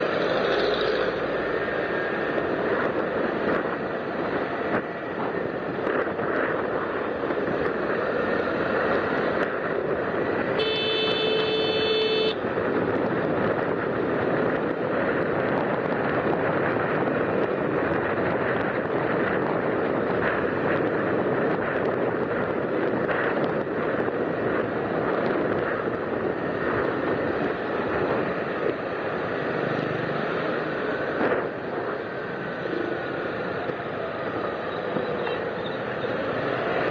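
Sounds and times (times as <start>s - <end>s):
traffic and road noise: 0.0s - 36.9s
vehicle horn: 10.6s - 12.4s.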